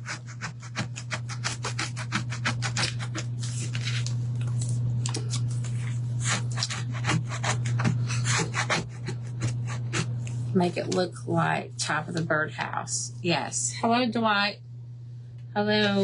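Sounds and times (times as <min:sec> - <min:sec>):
scraping glue off wood: 0:00.0 - 0:03.3, 0:06.2 - 0:10.1
steady low hum: 0:00.0 - 0:16.0.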